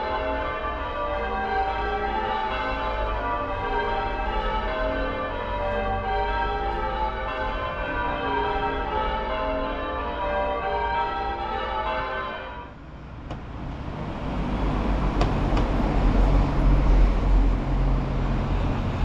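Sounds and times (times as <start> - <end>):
church bells pealing: 0.0 - 12.9.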